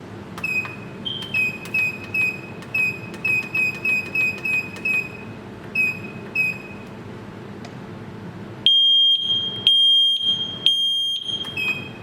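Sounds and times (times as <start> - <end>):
keypad key clicks: 0.4 - 6.9.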